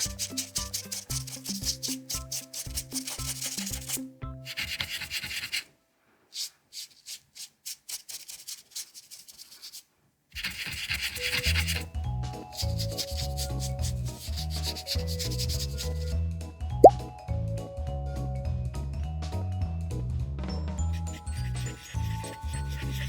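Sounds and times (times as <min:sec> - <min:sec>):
background music: 0:00.0 - 0:04.8, 0:11.3 - 0:23.0
scratchy paintbrush strokes: 0:00.0 - 0:05.7, 0:06.3 - 0:16.2, 0:20.8 - 0:23.0.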